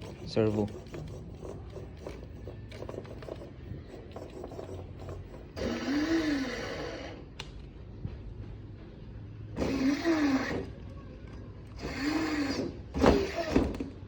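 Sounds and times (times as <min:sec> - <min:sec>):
toy car electric motor whirring: 0:00.0 - 0:07.2, 0:09.6 - 0:10.8, 0:11.8 - 0:13.7.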